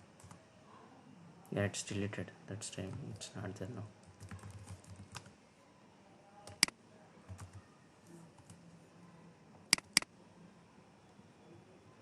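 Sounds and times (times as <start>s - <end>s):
computer mouse clicking: 6.5s - 6.7s, 9.7s - 10.1s.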